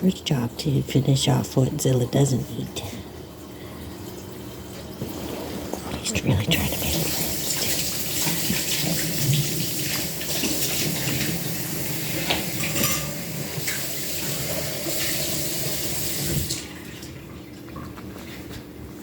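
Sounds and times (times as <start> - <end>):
tap running into sink: 7.1 - 16.7.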